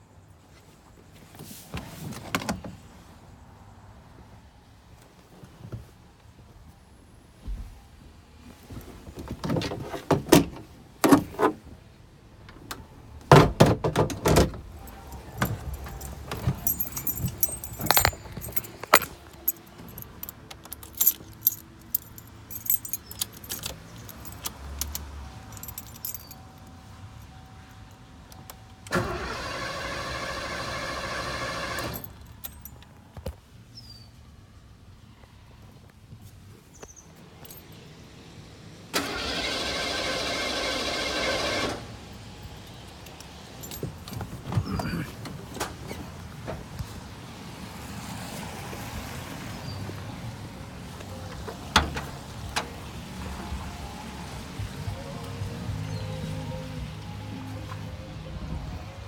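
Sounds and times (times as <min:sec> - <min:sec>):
keys jangling: 0:14.8 - 0:26.8, 0:31.8 - 0:32.8, 0:37.4 - 0:37.8, 0:42.4 - 0:45.0.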